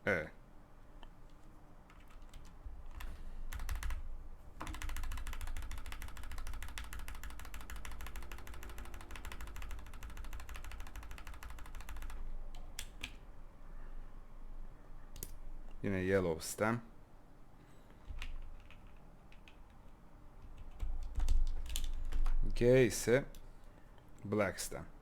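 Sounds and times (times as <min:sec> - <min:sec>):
fast mechanical keyboard typing: 0:01.9 - 0:04.0, 0:04.6 - 0:13.2, 0:18.1 - 0:19.7, 0:20.4 - 0:22.4.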